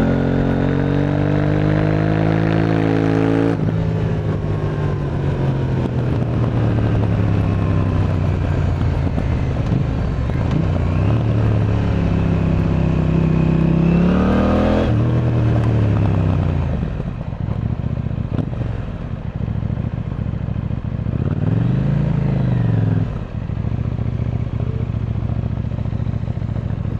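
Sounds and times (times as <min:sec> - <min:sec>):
motorcycle engine revving: 0:00.0 - 0:26.9.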